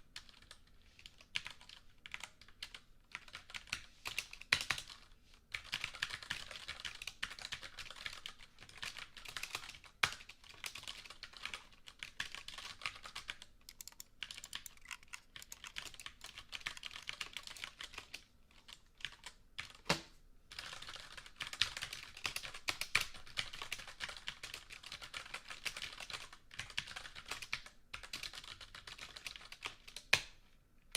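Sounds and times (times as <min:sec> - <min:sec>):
keyboard typing clicks: 0:05.7 - 0:18.2.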